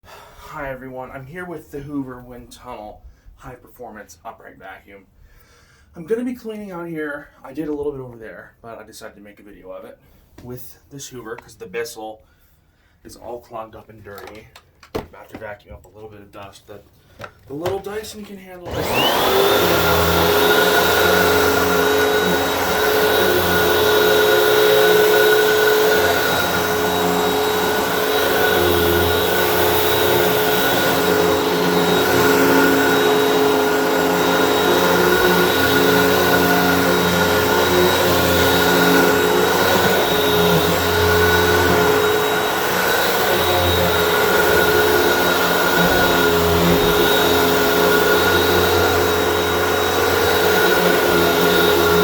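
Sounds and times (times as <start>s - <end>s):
vacuum cleaner running: 17.6s - 52.0s.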